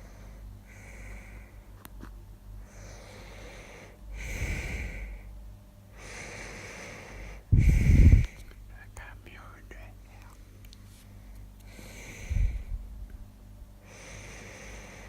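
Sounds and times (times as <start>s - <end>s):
person snoring: 2.8s - 5.1s.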